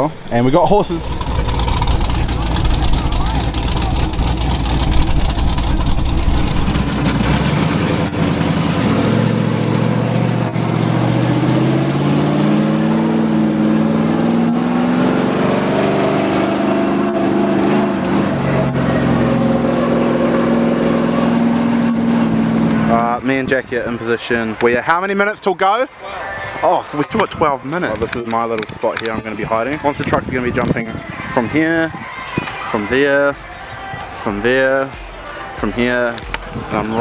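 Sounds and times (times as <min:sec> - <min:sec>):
vehicle engine rumbling and revving: 0:00.8 - 0:23.5.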